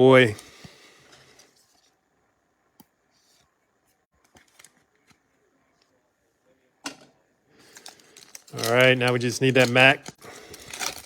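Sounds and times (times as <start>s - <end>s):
trading cards clicking and rustling: 7.6s - 11.0s.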